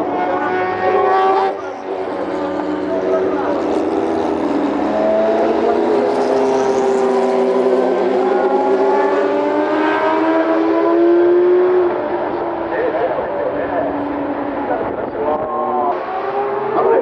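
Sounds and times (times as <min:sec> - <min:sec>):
race car engines at high revs: 0:00.0 - 0:17.0.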